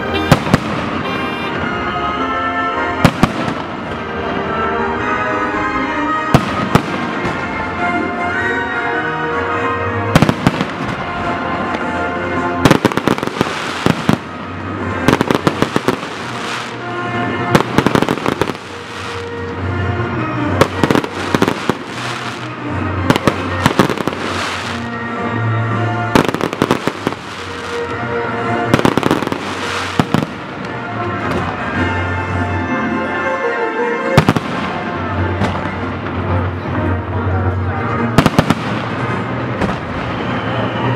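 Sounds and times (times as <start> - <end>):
music playing: 0.0 - 40.9
fireworks bursting and crackling: 0.1 - 1.4, 3.0 - 4.0, 6.3 - 7.6, 10.2 - 11.9, 12.6 - 16.9, 17.5 - 19.6, 20.5 - 25.0, 26.2 - 31.7, 38.2 - 40.3.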